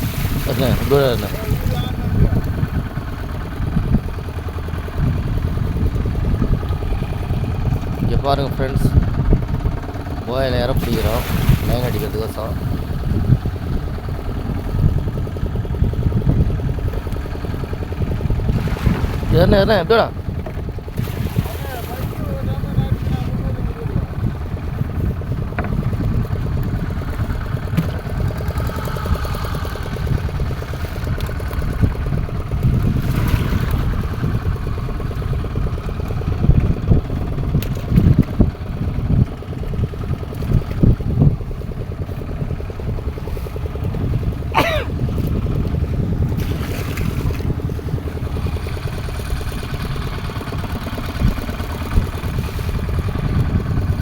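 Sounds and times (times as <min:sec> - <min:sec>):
boat motor rumbling: 0:00.0 - 0:54.0
wind: 0:00.0 - 0:54.0.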